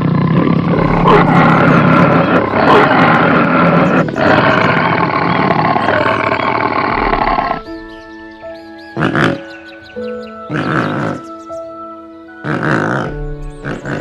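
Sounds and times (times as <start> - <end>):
loud rough animal call: 0.0 - 7.7, 12.4 - 14.0.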